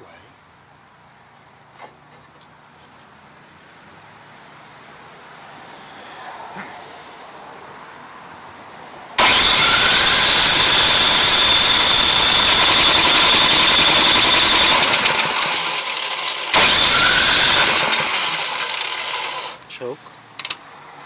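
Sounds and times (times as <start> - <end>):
electric starter whine: 9.2 - 19.7.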